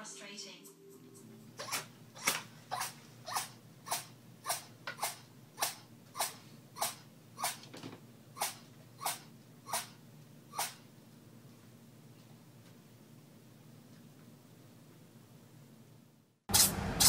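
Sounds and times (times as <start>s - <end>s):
cat sneezing: 1.6s - 7.7s, 8.4s - 10.9s.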